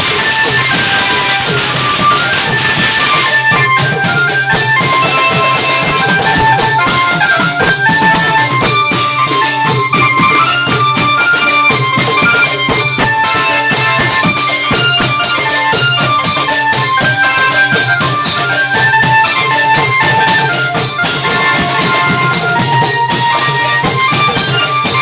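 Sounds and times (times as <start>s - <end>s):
long-drum ensemble playing: 0.0s - 25.0s
quick melody notes: 0.0s - 25.0s.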